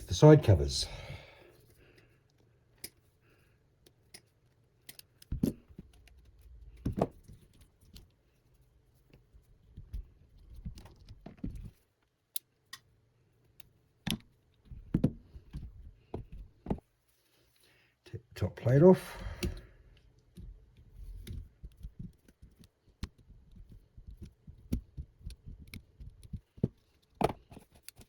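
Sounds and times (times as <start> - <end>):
tools clicking and knocking: 4.1 - 6.1.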